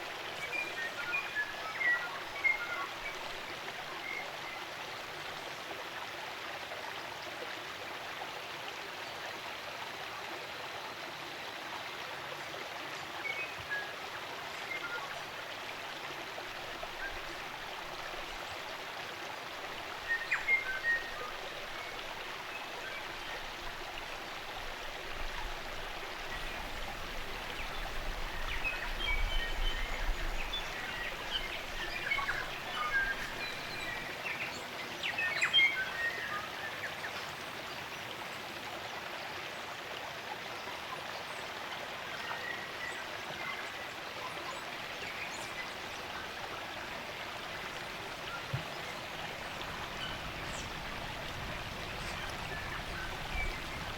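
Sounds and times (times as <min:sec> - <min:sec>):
stream water running: 0:00.0 - 0:53.9
songbirds chirping and whistling: 0:27.7 - 0:34.6.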